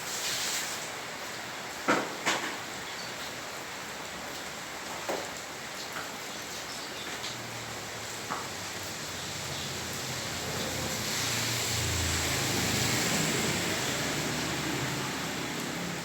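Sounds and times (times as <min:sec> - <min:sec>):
heavy rain falling: 0:00.0 - 0:16.0
vehicle passing through water: 0:07.3 - 0:16.0.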